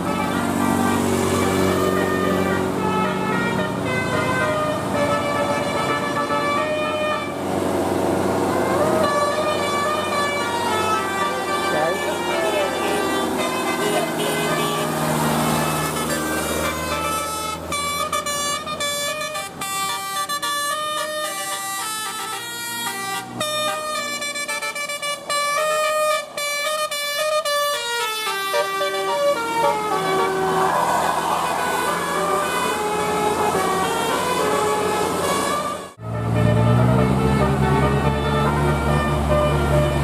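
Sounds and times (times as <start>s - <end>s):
multi-tone air horn melody: 0.0s - 7.6s, 8.4s - 40.0s
noisy wash: 0.0s - 17.8s, 28.6s - 36.0s.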